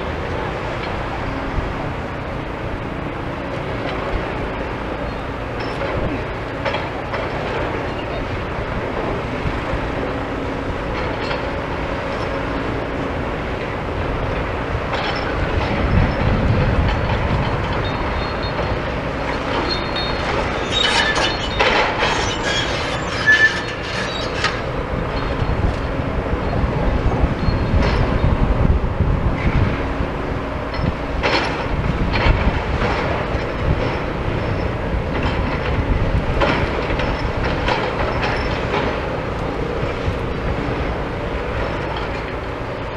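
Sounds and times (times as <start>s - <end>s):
diesel excavator rumble: 0.0s - 42.9s.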